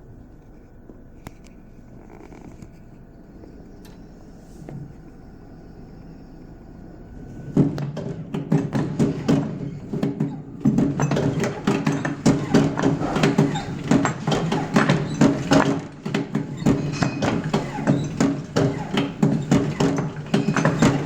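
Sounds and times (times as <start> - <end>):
stair climber machine running: 7.3 - 21.0
rapid irregular knocking and clattering: 7.5 - 21.0.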